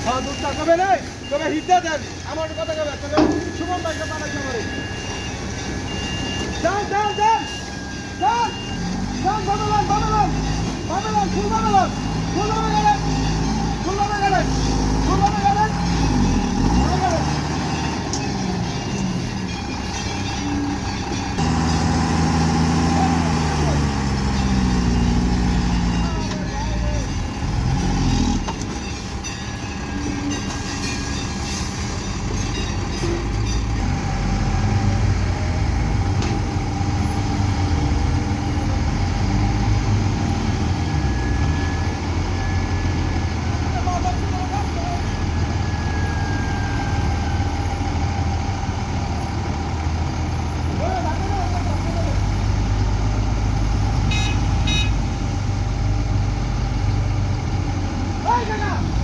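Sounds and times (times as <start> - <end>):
diesel engine rumble: 0.0 - 59.0
short high beeps: 2.5 - 9.7.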